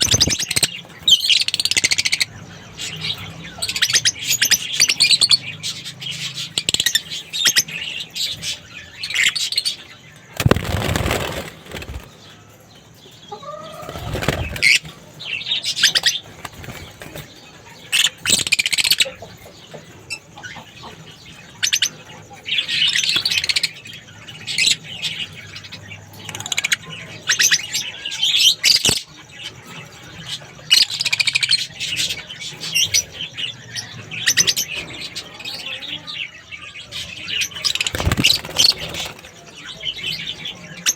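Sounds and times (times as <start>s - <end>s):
wings fluttering: 0.0s - 0.7s, 10.3s - 12.3s, 13.5s - 15.1s, 15.8s - 17.4s, 37.6s - 39.5s
lovebirds chirping: 0.0s - 40.9s.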